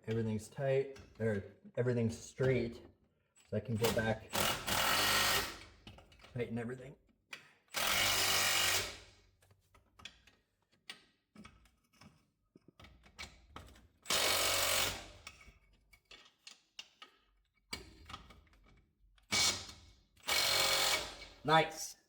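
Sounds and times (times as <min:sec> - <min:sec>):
impact wrench bursts: 0:03.8 - 0:05.7, 0:07.7 - 0:09.0, 0:14.1 - 0:15.2, 0:19.3 - 0:21.4
tool clatter and clicks: 0:15.2 - 0:21.3.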